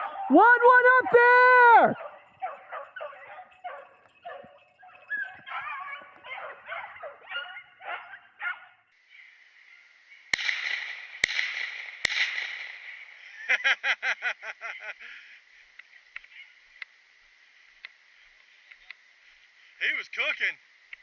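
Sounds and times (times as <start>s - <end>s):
beagles baying: 0.0s - 9.2s
steady hiss: 8.9s - 21.0s
gunshots: 10.3s - 13.2s.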